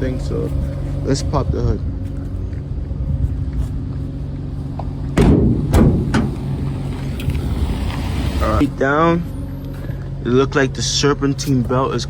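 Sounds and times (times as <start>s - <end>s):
car engine running: 0.0s - 12.0s
heavy thuds of car hood: 5.2s - 6.6s.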